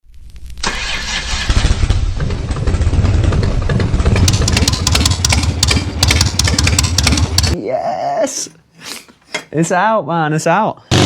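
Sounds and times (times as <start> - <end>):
motorcycle engine starting and running: 0.6 - 7.6.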